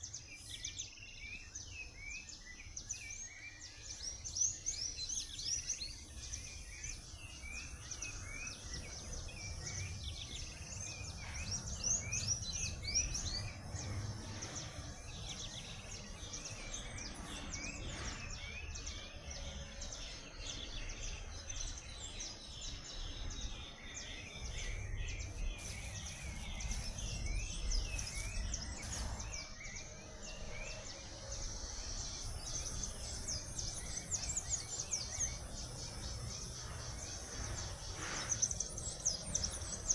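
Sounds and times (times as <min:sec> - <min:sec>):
birds chirping and singing: 0:00.0 - 0:39.9
low background rumble: 0:08.9 - 0:29.8.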